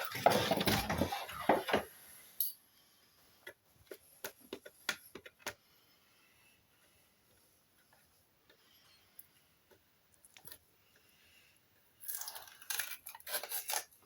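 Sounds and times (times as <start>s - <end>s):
plastic parts clattering: 0.0s - 1.9s.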